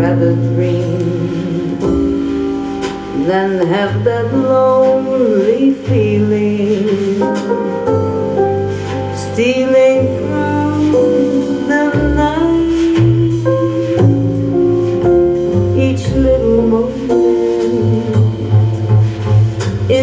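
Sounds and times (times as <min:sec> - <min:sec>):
jazz ballad from vinyl record: 0:00.0 - 0:20.0.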